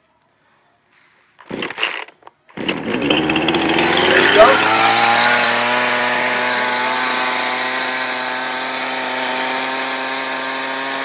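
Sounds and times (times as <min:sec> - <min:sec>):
chainsaw engine idling: 0:02.5 - 0:11.0.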